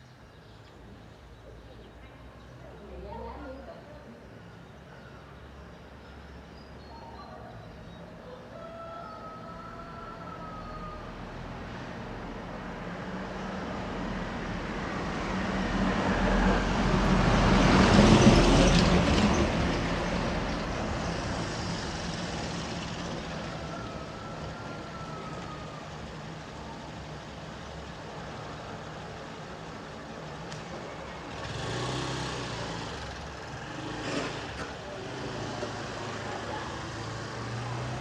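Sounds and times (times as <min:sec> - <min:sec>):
vehicle passing by: 0:10.8 - 0:27.5, 0:28.3 - 0:38.0.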